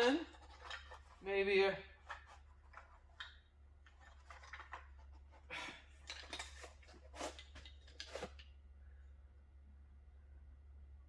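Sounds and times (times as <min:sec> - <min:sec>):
car parts handled in a box: 0:02.0 - 0:08.6.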